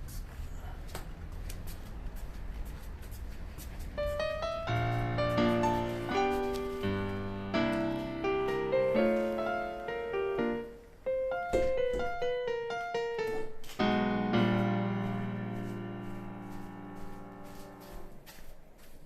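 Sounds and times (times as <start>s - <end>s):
background piano music: 3.9s - 18.3s.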